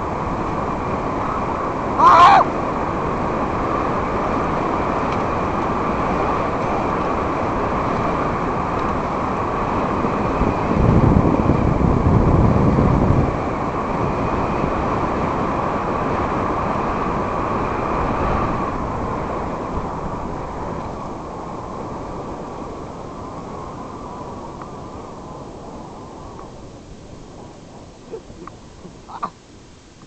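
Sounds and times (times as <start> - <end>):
bicycle rolling noise: 0.0 - 30.0
wind buffeting microphone: 0.0 - 30.0.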